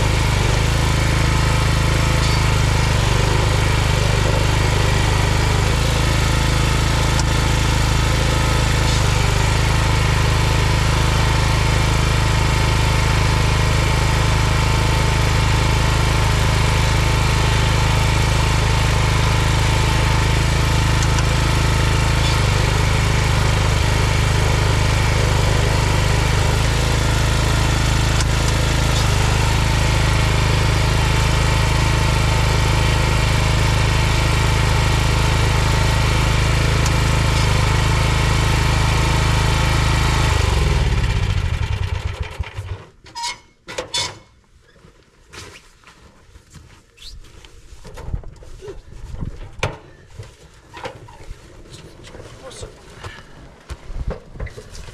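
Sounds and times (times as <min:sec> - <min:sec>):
small gasoline engine running: 0:00.0 - 0:43.0.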